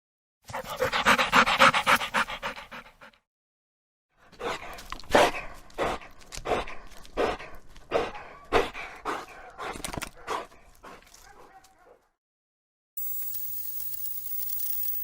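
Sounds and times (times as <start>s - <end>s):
dog panting: 0.5s - 3.2s, 4.3s - 11.3s.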